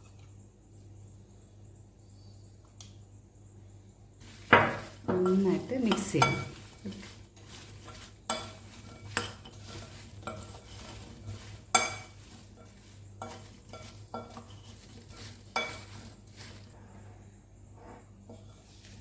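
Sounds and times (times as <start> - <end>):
spoon clinking and scraping bowl: 4.2 - 16.8.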